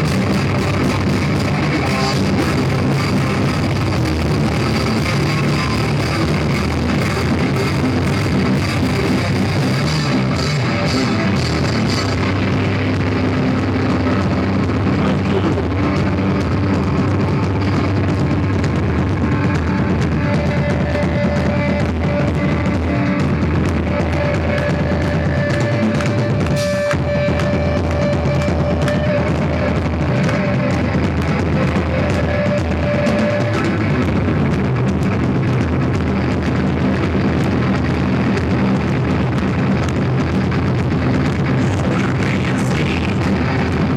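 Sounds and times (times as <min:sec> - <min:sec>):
live rock band playing: 0:00.0 - 0:43.9.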